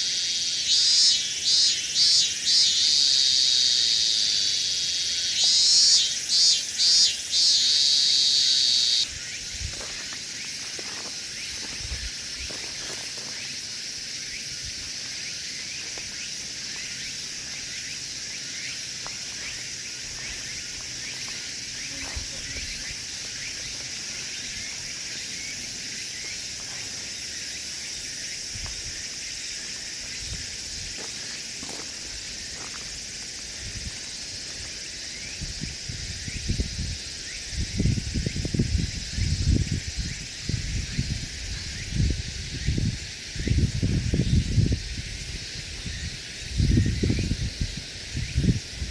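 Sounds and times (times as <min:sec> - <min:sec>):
chorus of insects chirring: 0:00.0 - 0:48.9
close insect buzzing: 0:00.1 - 0:10.5, 0:13.3 - 0:48.9.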